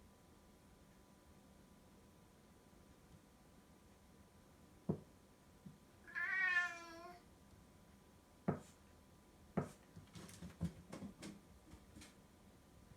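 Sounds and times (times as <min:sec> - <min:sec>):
cat meowing: 0:06.0 - 0:07.2.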